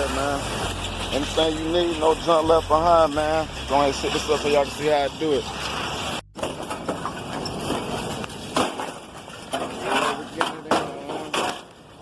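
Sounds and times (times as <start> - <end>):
scrap metal clanking: 3.2 - 12.0.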